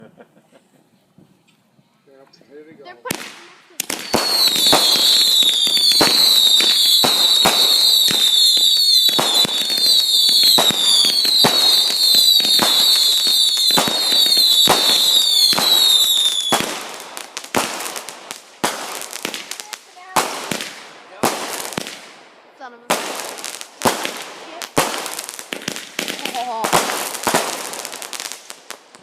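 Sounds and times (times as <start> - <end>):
firework pops and crackles: 3.1 - 29.0
firework whistles: 3.8 - 18.0.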